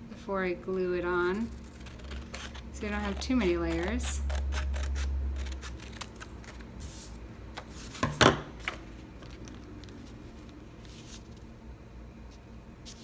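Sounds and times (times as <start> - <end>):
paper rustling: 5.8 - 11.5.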